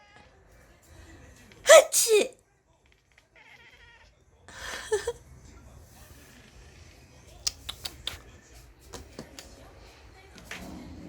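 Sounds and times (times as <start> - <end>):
breathy sneeze-like burst: 1.7 - 2.3.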